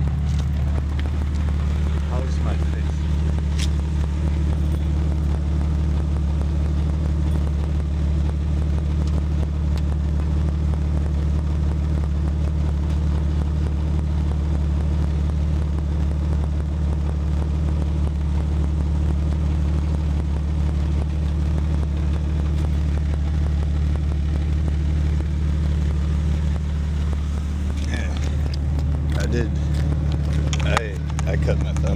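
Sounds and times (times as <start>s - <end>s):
truck exhaust idling: 0.0s - 31.9s.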